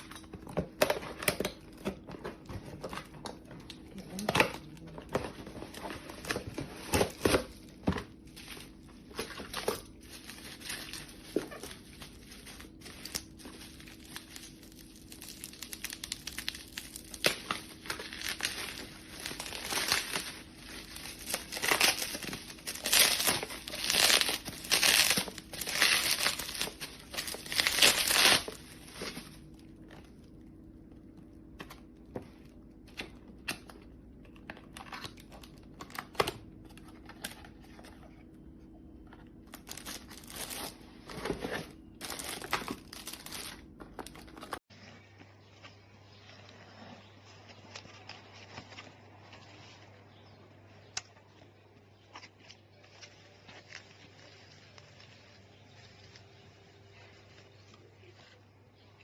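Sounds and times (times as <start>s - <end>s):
packaging crinkling and rustling: 0.0s - 30.8s, 31.4s - 44.7s, 52.0s - 58.4s
packaging tearing: 6.1s - 29.5s, 39.5s - 44.6s.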